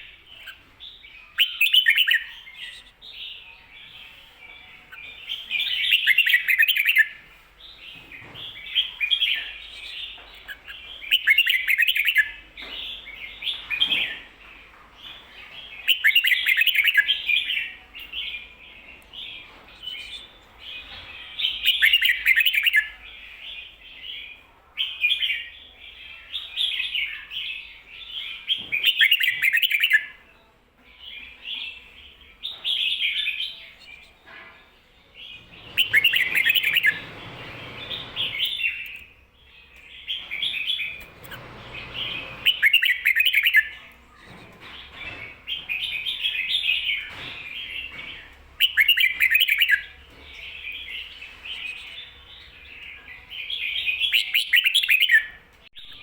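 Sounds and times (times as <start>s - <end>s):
bulbul singing warbled phrases: 0.0s - 7.2s, 41.8s - 56.0s
rustling noise: 33.8s - 38.7s.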